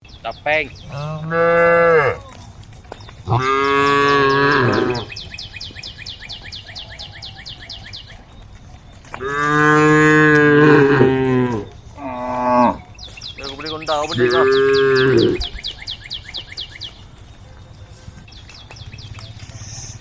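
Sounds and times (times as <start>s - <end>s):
cattle mooing: 0.9s - 2.4s, 3.3s - 5.2s, 9.2s - 12.9s, 13.9s - 15.5s.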